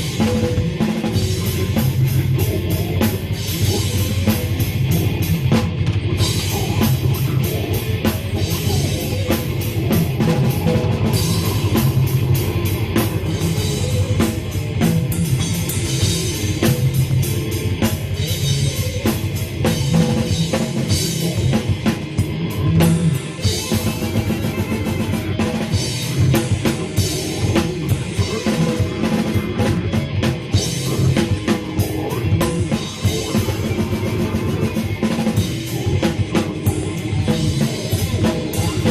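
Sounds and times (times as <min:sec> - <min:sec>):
drum kit pounding: 0:00.0 - 0:38.9
rock band playing: 0:00.0 - 0:38.9.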